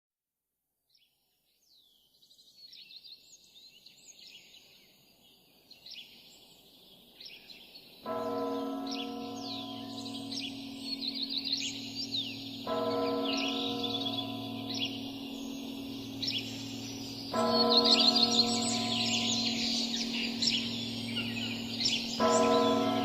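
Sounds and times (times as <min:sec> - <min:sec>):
small birds chirping: 0:01.0 - 0:23.0
large church bell ringing: 0:08.1 - 0:23.0.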